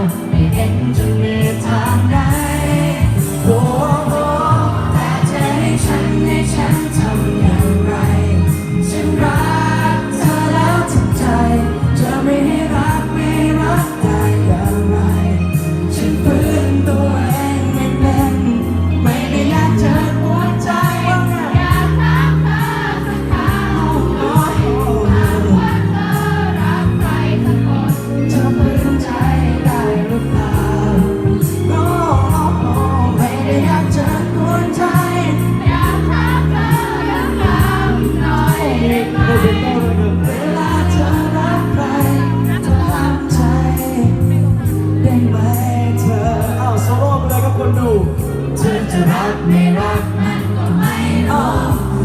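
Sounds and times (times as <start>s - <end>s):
live pop band with singing: 0.0s - 52.0s.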